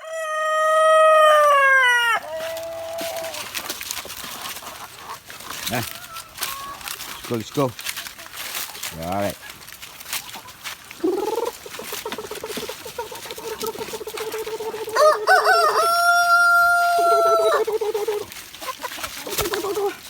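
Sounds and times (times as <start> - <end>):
rooster crowing: 0.0 - 3.4, 14.8 - 17.8
chickens clucking: 0.0 - 20.0.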